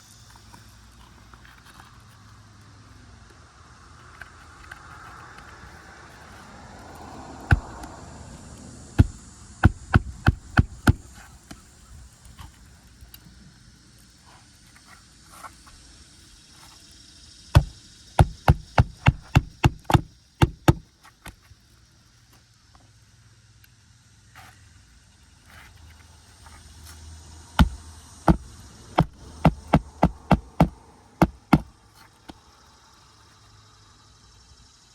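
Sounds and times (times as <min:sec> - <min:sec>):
hammer driving roofing nails: 0:07.4 - 0:07.9, 0:09.0 - 0:11.2, 0:17.5 - 0:21.4, 0:27.6 - 0:31.7.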